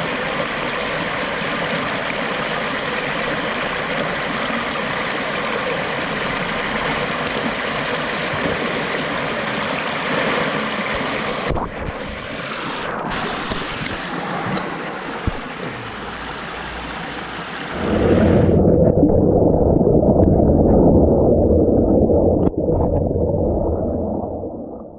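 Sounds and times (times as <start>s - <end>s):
brook trickling over stones: 0.0s - 11.4s
lower water rush: 0.0s - 24.9s.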